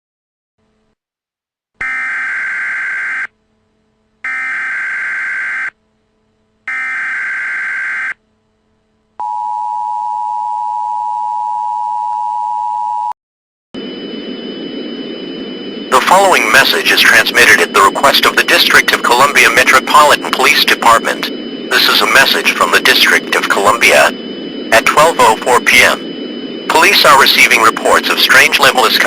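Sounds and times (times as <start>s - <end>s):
two-tone attention signal: 13.8s - 29.0s
screeching digital data bursts: 15.7s - 29.0s.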